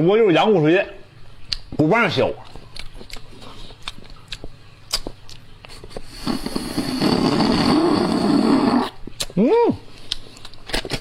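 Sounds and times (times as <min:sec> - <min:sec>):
slurping marrow from a bone: 0:05.7 - 0:09.3.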